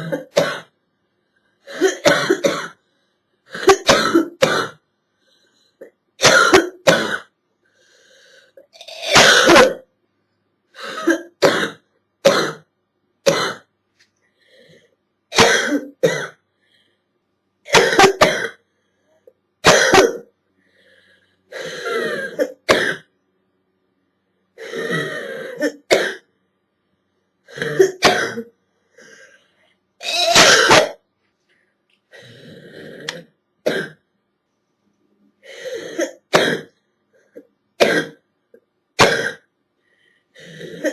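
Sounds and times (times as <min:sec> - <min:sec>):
girl coughing: 0:01.7 - 0:02.8, 0:03.6 - 0:04.8, 0:06.2 - 0:07.3, 0:08.9 - 0:09.9, 0:15.4 - 0:16.4, 0:17.7 - 0:18.6, 0:19.7 - 0:20.3, 0:24.8 - 0:26.3, 0:27.6 - 0:28.5, 0:30.0 - 0:31.0.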